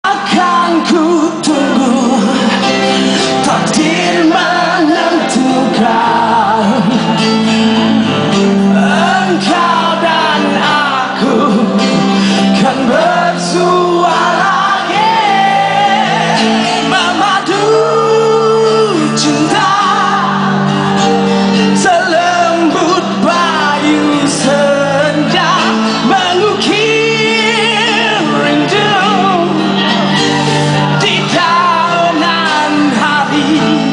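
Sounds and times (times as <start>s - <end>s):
live band playing: 0.0s - 33.9s
man singing lead vocal: 0.0s - 33.9s.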